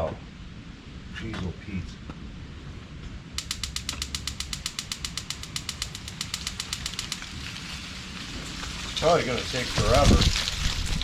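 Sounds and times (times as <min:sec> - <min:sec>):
spark igniter clicking rapidly: 0:03.4 - 0:10.0
steady gas hiss: 0:03.4 - 0:10.2.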